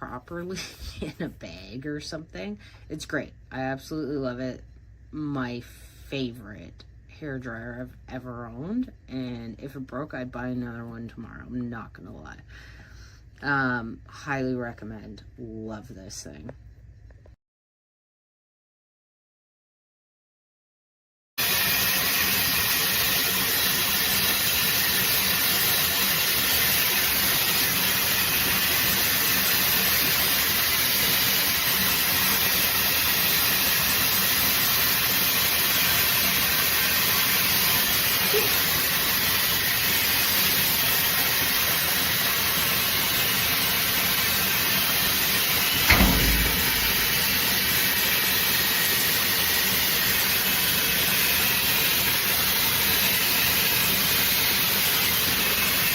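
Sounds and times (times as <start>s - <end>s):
hair dryer blowing air: 21.4s - 48.1s
handling bump: 45.8s - 47.4s.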